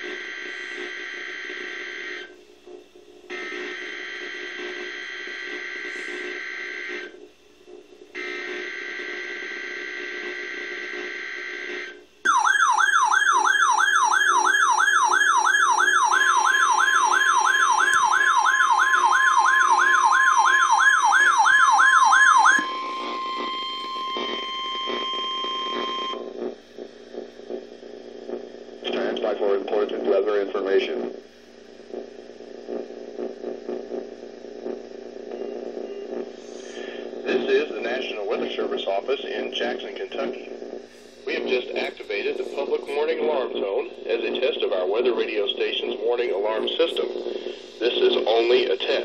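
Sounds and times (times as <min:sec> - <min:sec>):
warbling alert siren: 0:00.0 - 0:02.4, 0:03.3 - 0:07.2, 0:08.1 - 0:26.6
steady warning alarm tone: 0:00.0 - 0:29.9, 0:35.4 - 0:49.0.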